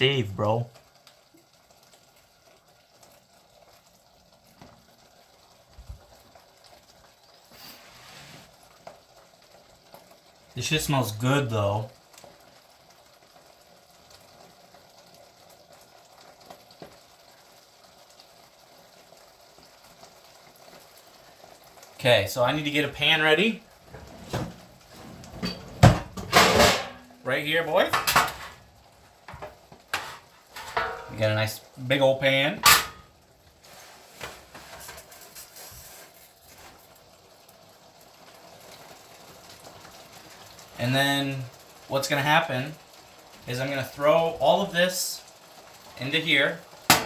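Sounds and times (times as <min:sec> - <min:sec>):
sauce boiling in a pot: 0:00.0 - 0:47.0.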